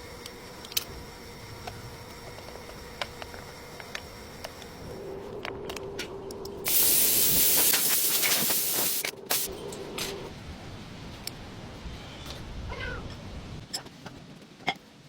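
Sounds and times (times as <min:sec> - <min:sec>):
loud spray hiss: 0:06.7 - 0:09.5.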